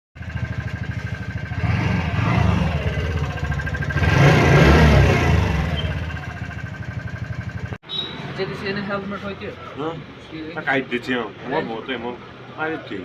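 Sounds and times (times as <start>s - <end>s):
scooter engine revving: 0.2s - 8.4s.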